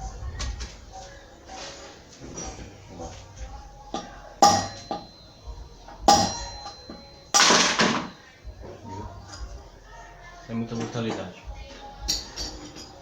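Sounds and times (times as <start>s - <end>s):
hammer striking metal: 3.9s - 8.2s.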